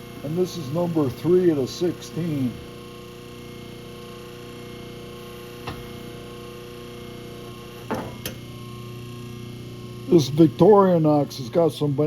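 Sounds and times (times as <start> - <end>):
steady electrical hum: 0.0 - 12.0.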